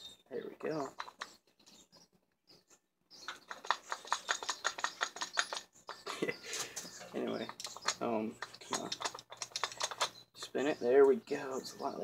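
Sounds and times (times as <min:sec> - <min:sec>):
metal parts clicking and rattling: 0:03.3 - 0:05.7, 0:07.0 - 0:10.2.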